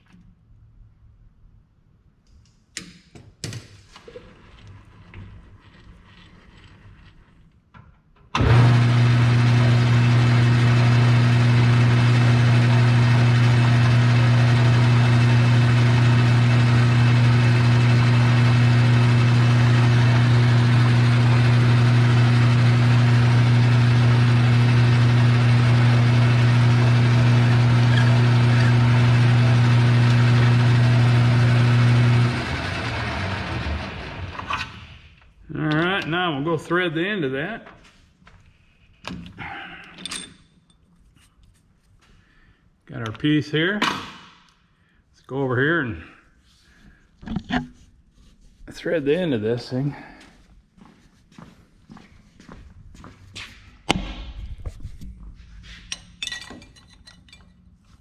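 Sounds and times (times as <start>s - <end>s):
electric shop machine humming: 8.4s - 36.3s.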